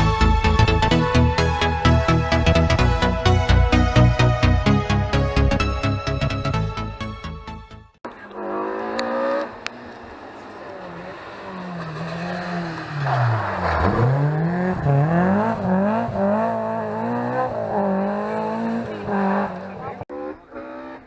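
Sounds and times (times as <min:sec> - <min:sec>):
rally car engine accelerating: 0:08.1 - 0:21.0.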